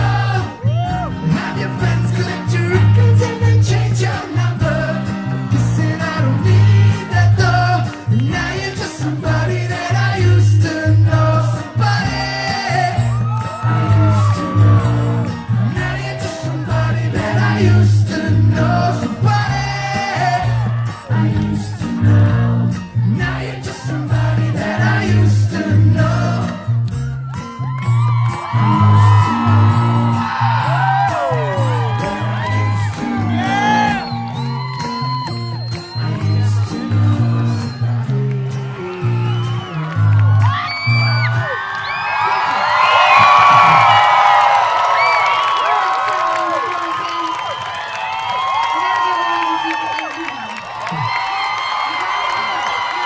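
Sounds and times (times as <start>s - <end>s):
live band playing pop song: 0.0s - 41.6s
crowd whooping and cheering: 0.0s - 53.0s.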